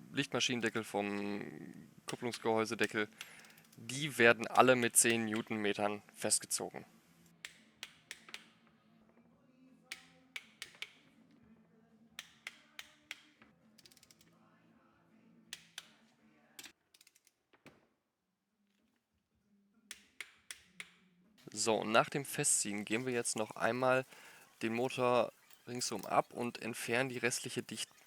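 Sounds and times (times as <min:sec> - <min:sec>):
wrench ratchet clicking: 0:13.8 - 0:14.3.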